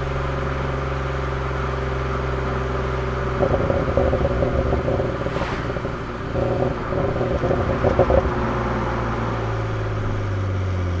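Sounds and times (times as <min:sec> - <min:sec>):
car engine drone: 0:00.0 - 0:11.0
exhaust crackling and popping: 0:03.0 - 0:10.3.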